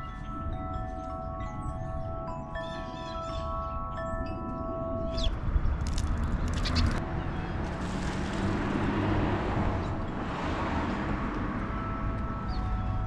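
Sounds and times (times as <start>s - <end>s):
vehicle passing: 5.3s - 13.0s.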